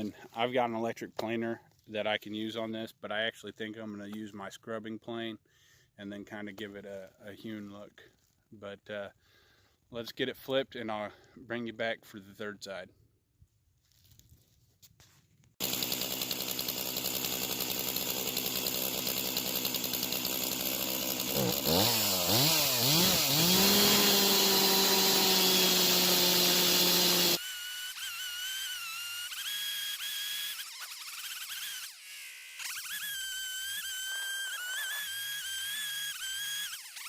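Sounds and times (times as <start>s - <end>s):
chainsaw revving and cutting: 15.6s - 37.0s.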